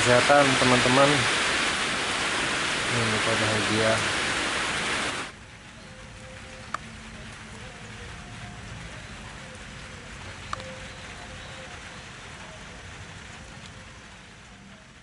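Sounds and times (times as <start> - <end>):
steady rain falling: 0.0 - 15.0
sharp tick: 6.7 - 6.9.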